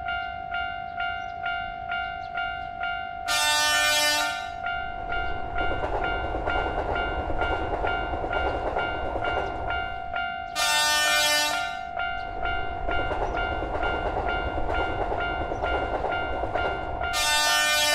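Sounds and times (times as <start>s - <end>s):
passing train rumble: 0.0s - 17.9s
train horn blast: 3.3s - 4.6s, 10.5s - 11.9s, 17.1s - 17.9s.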